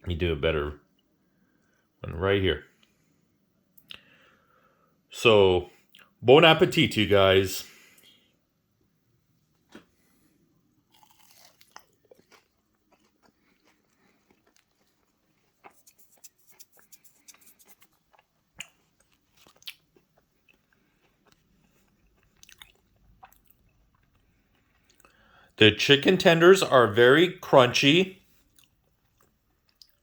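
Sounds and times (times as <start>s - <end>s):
person chewing crunchy food: 9.6s - 25.4s, 28.3s - 30.0s.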